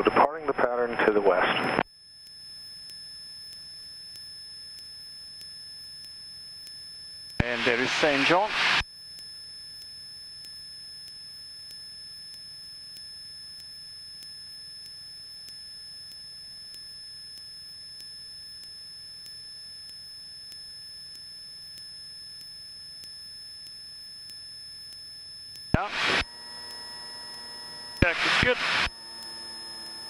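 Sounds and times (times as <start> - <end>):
faint regular ticks: 2.1 - 7.4, 8.8 - 28.1
steady electrical whine and hiss: 7.4 - 8.8, 25.8 - 30.0.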